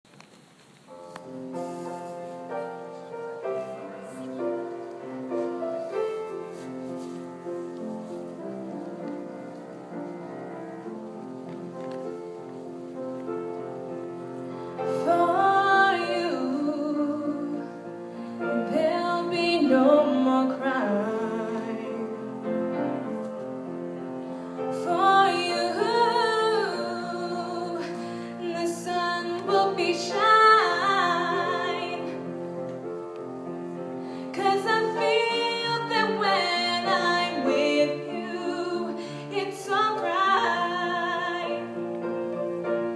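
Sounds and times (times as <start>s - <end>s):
piano accompaniment: 0.8s - 42.9s
woman singing slow song: 14.9s - 17.8s, 18.5s - 22.3s, 24.7s - 32.2s, 34.4s - 41.6s.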